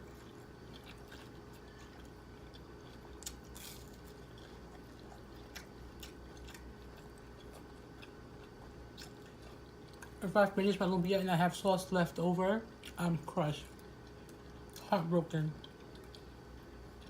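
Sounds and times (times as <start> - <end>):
quiet chewing: 0.0 - 10.2, 15.5 - 17.0.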